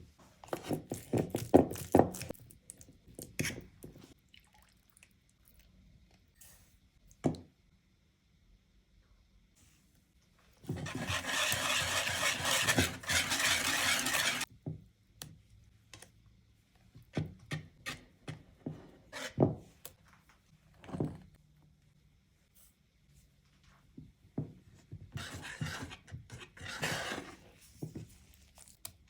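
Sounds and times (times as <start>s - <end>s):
dense loud kitchen noise: 10.6s - 14.5s.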